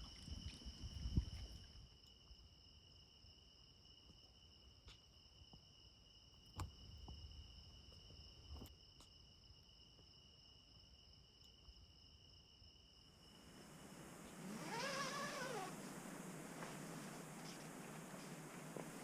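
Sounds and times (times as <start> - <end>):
insects trilling: 10.8 - 19.0.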